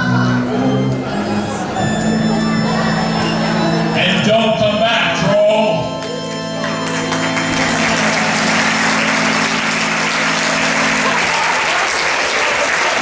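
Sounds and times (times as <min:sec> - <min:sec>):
low held musical chord: 0:00.4 - 0:12.2
audience applauding: 0:06.0 - 0:13.0.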